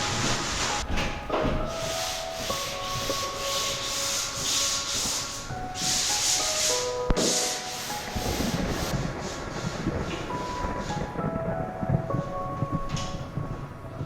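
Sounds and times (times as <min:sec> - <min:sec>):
hand sanding a wall: 0:01.4 - 0:09.7.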